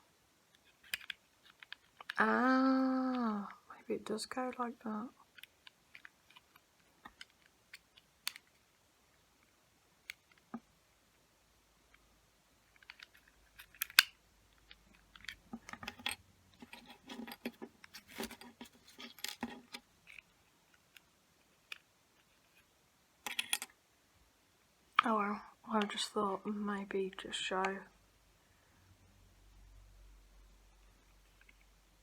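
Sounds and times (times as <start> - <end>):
plastic parts clicking and rattling: 0.5 - 2.2, 4.2 - 8.7, 12.6 - 22.6, 23.2 - 23.8.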